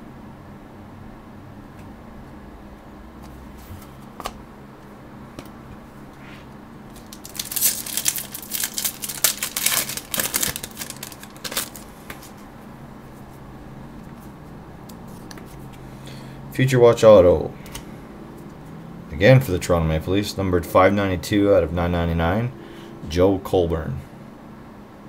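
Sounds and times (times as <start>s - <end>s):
foil wrapper tearing and crinkling: 6.9s - 12.4s.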